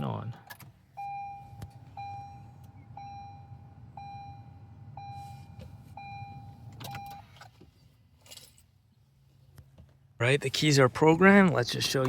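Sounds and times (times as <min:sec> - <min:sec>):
low steady hum: 0:00.0 - 0:07.4
car warning chime beeping: 0:00.9 - 0:07.4.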